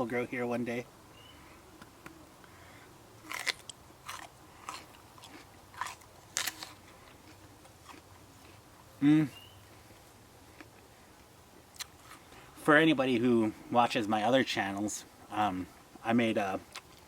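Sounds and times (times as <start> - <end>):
crunchy chewing of raw pepper: 3.2 - 8.8, 11.7 - 12.5, 16.6 - 17.0.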